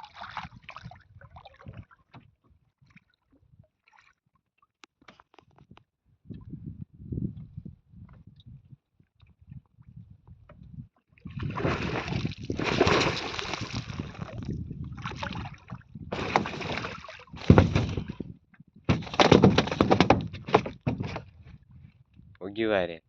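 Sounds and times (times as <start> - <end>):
water splashing and sloshing: 0.0 - 5.6, 10.5 - 18.3, 18.9 - 21.6.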